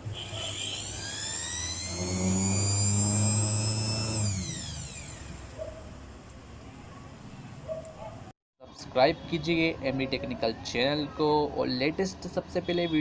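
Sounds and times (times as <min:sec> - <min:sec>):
mixer grinder motor whining: 0:00.2 - 0:05.7.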